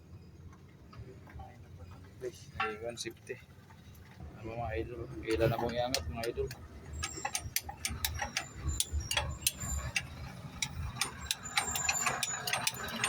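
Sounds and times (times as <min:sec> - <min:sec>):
hand tools clicking on metal: 0:05.3 - 0:13.0.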